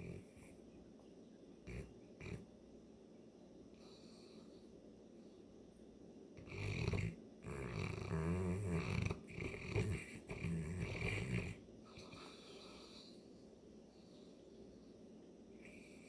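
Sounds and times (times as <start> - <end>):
dog snoring loudly: 0.0 - 0.4, 1.6 - 2.4, 6.4 - 13.0.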